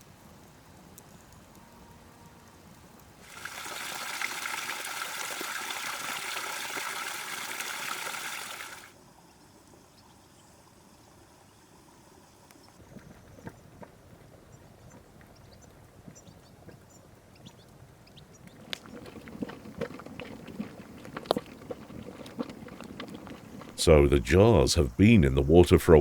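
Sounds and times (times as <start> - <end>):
liquid pouring: 3.2 - 8.9, 18.6 - 24.6.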